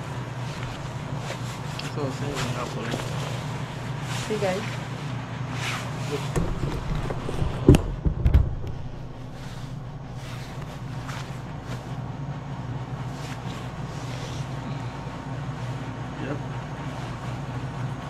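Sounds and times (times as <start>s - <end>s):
steady low hum: 0.0s - 18.0s
clothing and packaging rustling: 0.1s - 12.1s, 12.8s - 14.6s
sharp knocks: 6.3s - 11.6s.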